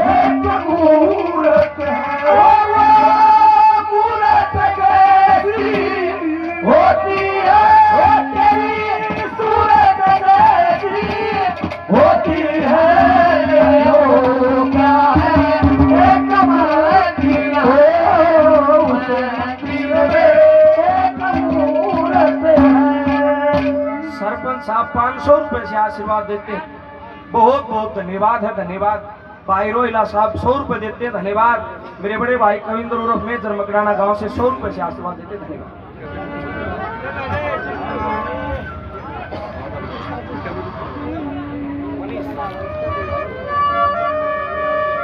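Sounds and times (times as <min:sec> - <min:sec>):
ornamented folk melody: 0:00.0 - 0:27.7, 0:35.7 - 0:45.0
drum strokes: 0:00.0 - 0:27.9, 0:29.4 - 0:45.0
held low drone note: 0:39.7 - 0:45.0.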